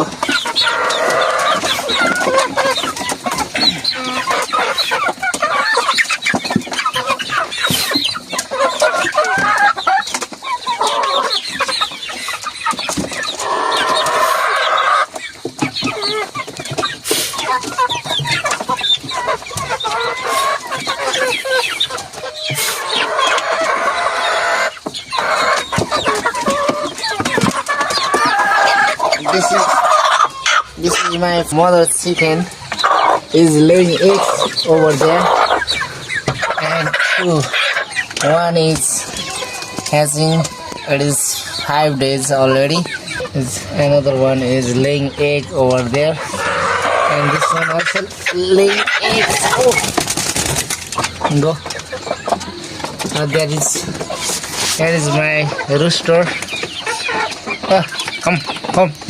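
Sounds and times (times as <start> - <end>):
chickens clucking: 0.0 - 59.0.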